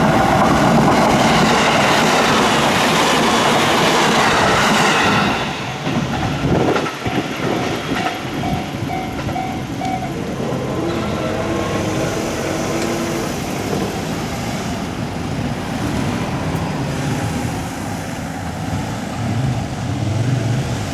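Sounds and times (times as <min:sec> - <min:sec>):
engine rumble: 0:06.3 - 0:20.9
road vehicles passing: 0:06.3 - 0:20.9
level crossing alarm tones: 0:07.1 - 0:10.3.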